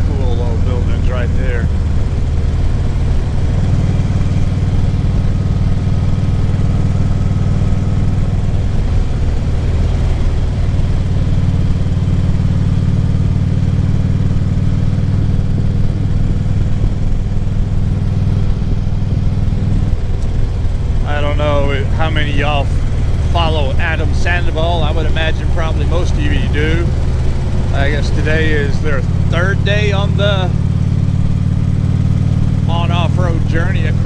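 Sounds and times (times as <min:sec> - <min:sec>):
motorcycle engine running: 0:00.0 - 0:34.0
road noise: 0:00.0 - 0:34.0
wind: 0:00.0 - 0:34.0.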